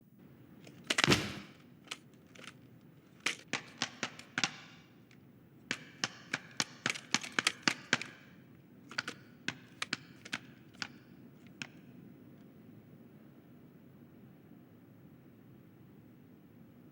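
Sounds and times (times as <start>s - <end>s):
toy figures clattering: 0.6s - 4.9s, 5.7s - 11.8s
sharp clicks and knocks: 0.6s - 11.8s.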